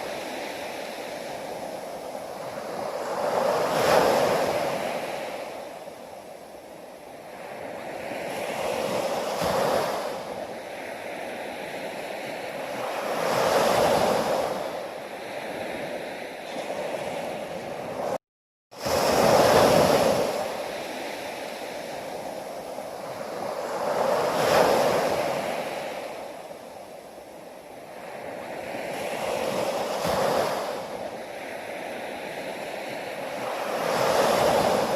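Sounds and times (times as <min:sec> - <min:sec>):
ocean waves surging: 0:18.8 - 0:34.9.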